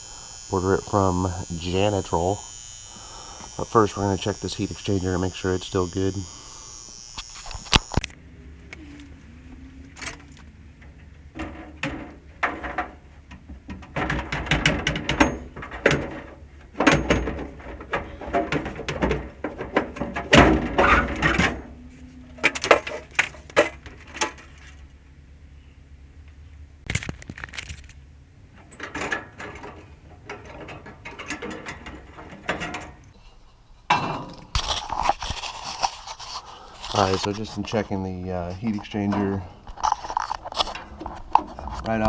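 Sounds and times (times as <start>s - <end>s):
tools knocking and clattering on metal: 10.8s - 21.6s, 28.6s - 33.0s.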